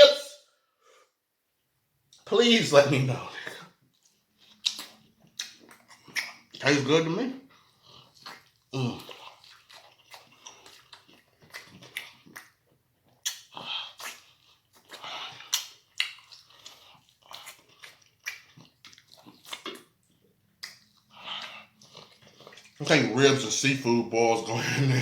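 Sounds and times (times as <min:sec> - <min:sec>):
chewing and lip smacking: 0:03.4 - 0:06.6, 0:07.4 - 0:22.8.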